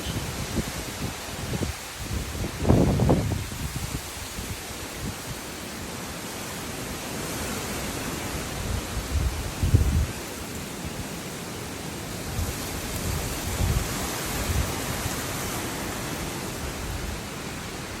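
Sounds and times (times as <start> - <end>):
low wind buffeting: 0.0 - 5.4, 8.5 - 11.2, 12.2 - 18.0
wind and rain rushing: 0.0 - 18.0.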